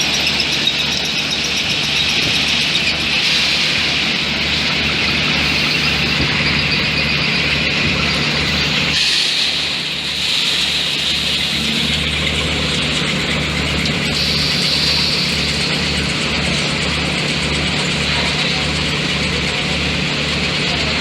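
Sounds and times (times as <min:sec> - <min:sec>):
industrial machinery whining: 0:00.0 - 0:21.0
pulsing low hum: 0:10.7 - 0:21.0.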